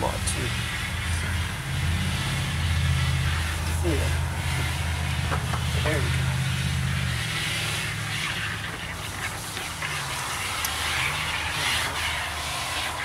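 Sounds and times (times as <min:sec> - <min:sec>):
low engine-like hum: 0:00.0 - 0:13.0.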